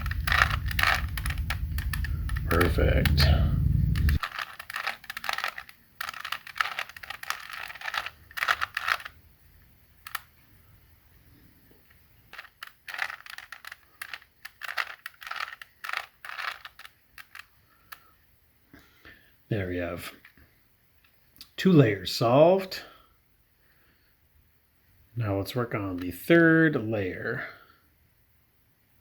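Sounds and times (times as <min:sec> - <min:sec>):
puzzle cube pieces clicking: 0:00.0 - 0:09.2, 0:09.9 - 0:10.4, 0:11.9 - 0:18.1.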